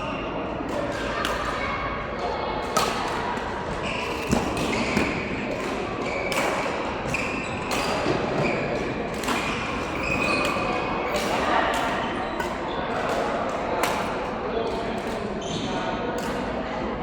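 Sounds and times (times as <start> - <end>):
rackets hitting shuttlecock: 2.6 - 3.5, 4.1 - 15.2
shoes squeaking on floor: 9.5 - 10.8.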